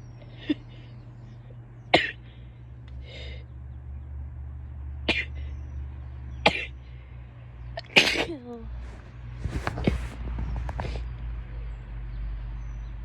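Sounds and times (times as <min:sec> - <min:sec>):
steady low hum: 0:00.0 - 0:13.0
breathy inhale: 0:02.2 - 0:03.5
woman sneezing: 0:08.0 - 0:08.5.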